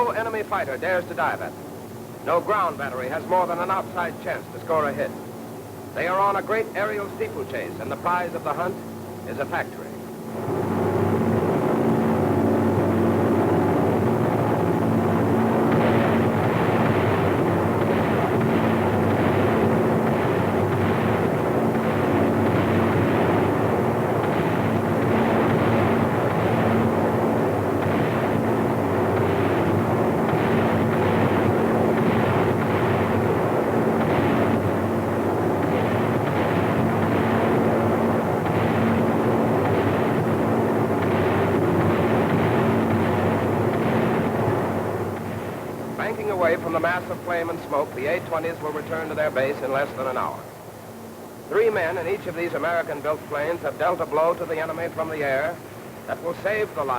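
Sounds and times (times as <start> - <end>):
aircraft engines droning: 0.0 - 56.9
rapid explosion blasts: 14.0 - 47.2.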